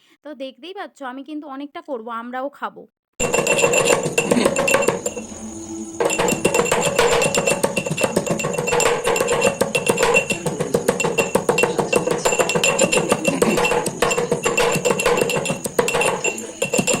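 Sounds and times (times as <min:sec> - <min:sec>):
pestle striking metal mortar: 0:03.2 - 0:05.4, 0:06.0 - 0:17.0.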